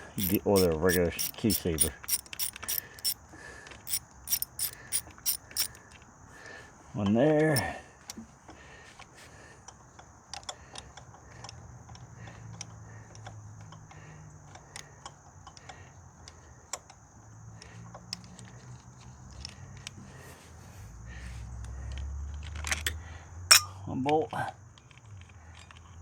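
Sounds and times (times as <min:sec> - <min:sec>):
wrench and bolts clicking: 0:00.0 - 0:03.2, 0:03.9 - 0:05.8, 0:23.5 - 0:23.7.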